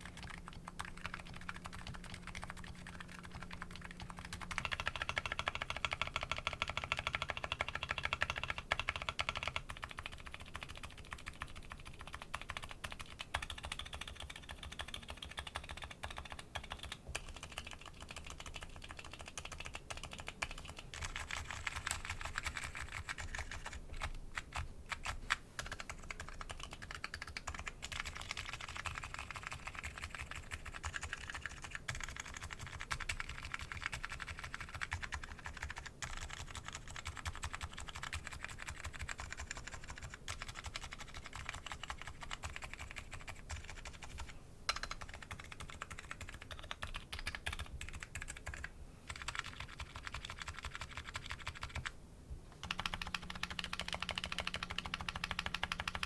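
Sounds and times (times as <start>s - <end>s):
keyboard keystroke clacks: 52.6s - 56.0s.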